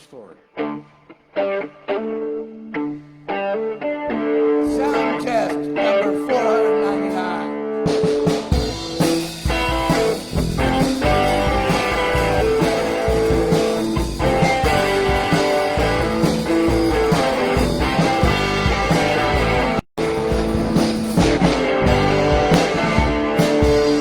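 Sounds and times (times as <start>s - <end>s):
electric guitar: 0.4s - 24.0s
bass guitar: 7.0s - 24.0s
drums keeping a steady beat: 7.9s - 24.0s.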